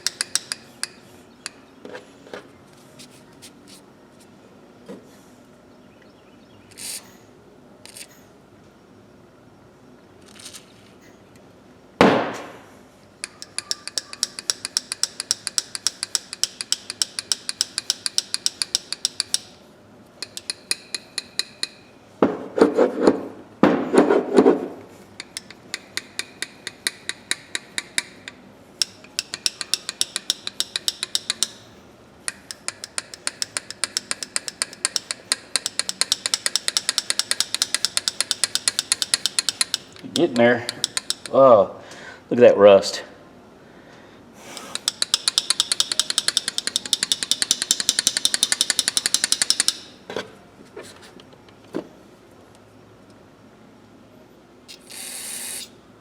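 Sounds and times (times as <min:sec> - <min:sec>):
pliers jaws clicking: 0:13.2 - 0:19.6, 0:25.2 - 0:31.6, 0:32.3 - 0:41.4, 0:44.6 - 0:49.9
sharp metal knock: 0:25.2 - 0:31.7.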